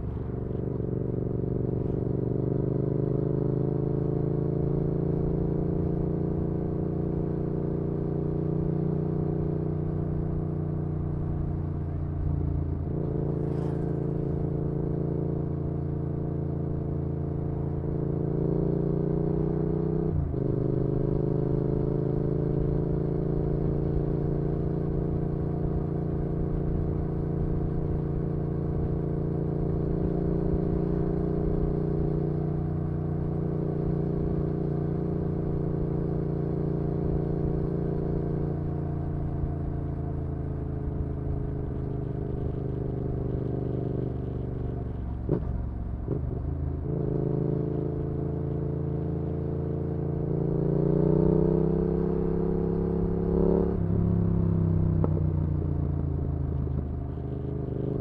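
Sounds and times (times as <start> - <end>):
motorcycle engine cruising: 0.0 - 58.0.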